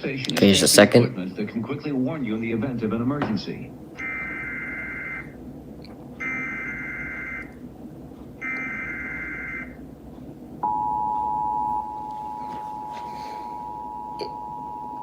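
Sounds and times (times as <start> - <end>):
digital data tone bursts: 4.0 - 5.4, 6.2 - 7.6, 8.4 - 9.8
two-tone attention signal: 4.0 - 5.4, 6.2 - 7.6, 8.4 - 9.8, 10.6 - 15.0.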